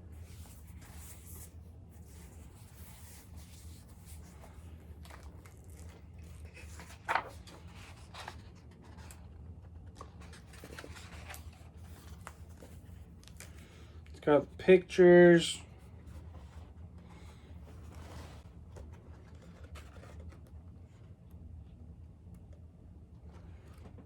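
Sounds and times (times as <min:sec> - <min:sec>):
steady low hum: 0:00.0 - 0:24.0
paper and cardboard rustling: 0:00.1 - 0:14.0, 0:15.8 - 0:21.1
book pages turning: 0:00.2 - 0:14.0, 0:16.0 - 0:20.6.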